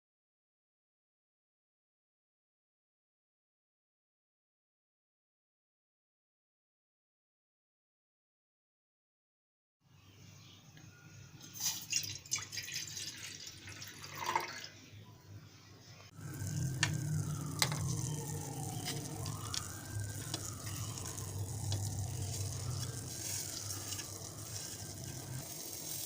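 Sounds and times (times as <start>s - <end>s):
water running and dripping: 11.7s - 14.7s, 16.2s - 26.0s
steady low hum: 16.1s - 25.9s.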